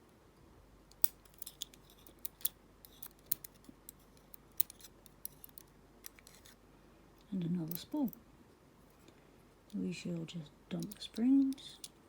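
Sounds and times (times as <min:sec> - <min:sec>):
small metallic clicks and taps: 0:00.9 - 0:06.6, 0:10.7 - 0:12.0.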